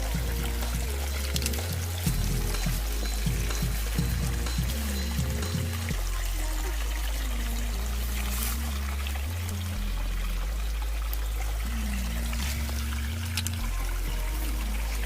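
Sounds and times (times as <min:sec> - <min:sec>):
background music with bass line: 0:00.0 - 0:15.0
water trickling and pouring: 0:00.0 - 0:15.0.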